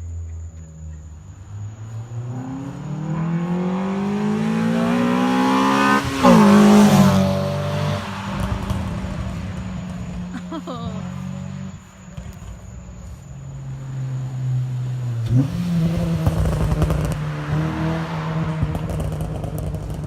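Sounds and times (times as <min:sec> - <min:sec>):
car engine revving: 0:01.2 - 0:20.0.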